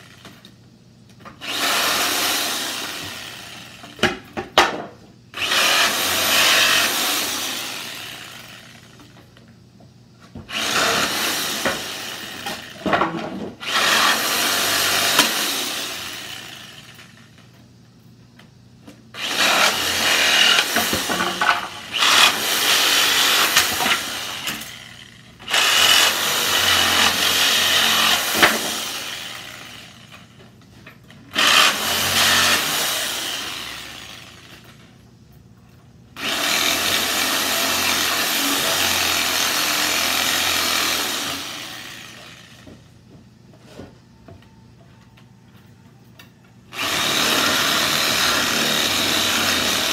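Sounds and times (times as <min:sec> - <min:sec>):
reciprocating saw cutting nails: 0:19.2 - 0:29.9, 0:31.3 - 0:34.3.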